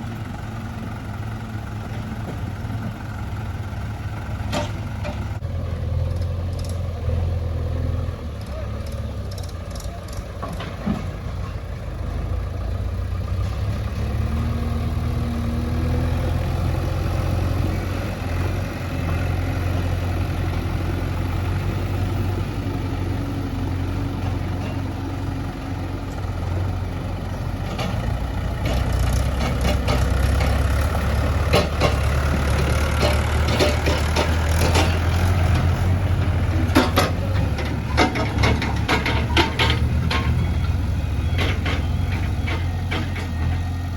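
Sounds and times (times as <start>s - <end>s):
diesel engine running: 0.0s - 43.9s
sharp knocks and clanks: 4.4s - 5.4s, 9.4s - 11.6s, 27.7s - 43.7s.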